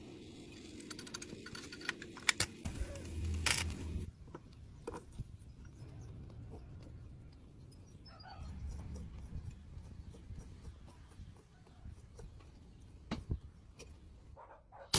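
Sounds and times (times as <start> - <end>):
low hum: 2.7 - 4.7.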